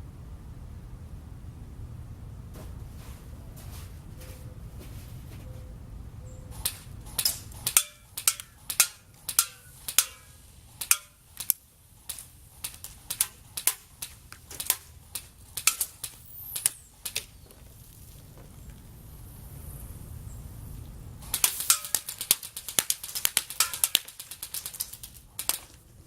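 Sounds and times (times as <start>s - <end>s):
airsoft gun shots: 6.6s - 17.4s, 21.2s - 25.8s.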